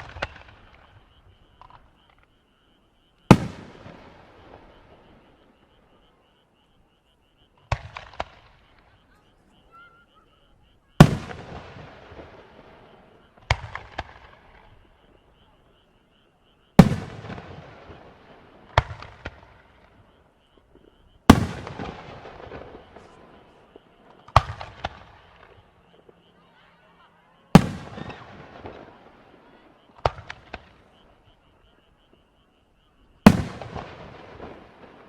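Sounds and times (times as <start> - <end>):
small sharp firework cracks: 0.0 - 2.3, 3.3 - 5.7, 7.6 - 9.0, 11.0 - 15.0, 16.8 - 20.1, 20.8 - 26.7, 27.5 - 31.3, 33.2 - 35.0
firework shells booming and crackling: 0.0 - 2.4, 3.2 - 6.2, 7.5 - 15.7, 16.6 - 35.0.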